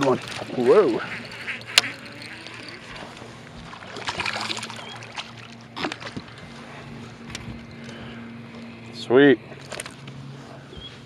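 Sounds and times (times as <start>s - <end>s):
water splashing: 0.0s - 6.8s
steady low hum: 0.0s - 11.0s.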